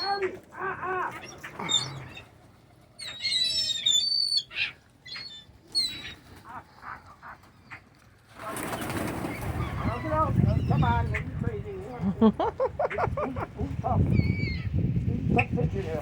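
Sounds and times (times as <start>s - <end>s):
birds squawking: 0.0s - 13.2s, 14.0s - 14.8s
wings flapping: 4.6s - 11.4s.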